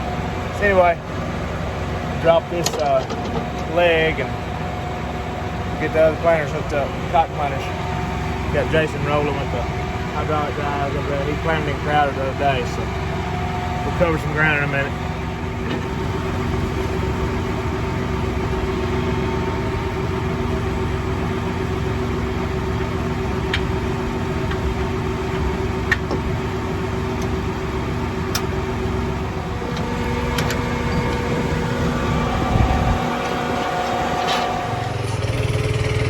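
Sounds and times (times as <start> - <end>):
tractor engine running: 0.0 - 36.0.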